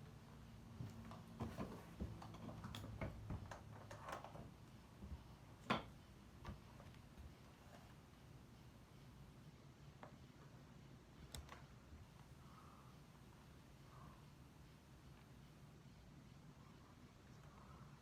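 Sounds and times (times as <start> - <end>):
faint low hum: 0.0 - 18.0
faint clicks and taps: 0.8 - 8.0, 9.9 - 12.3.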